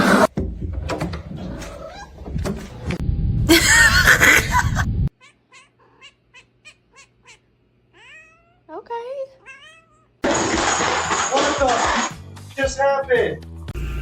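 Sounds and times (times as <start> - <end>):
cat yowling: 5.1 - 8.6, 9.4 - 10.1.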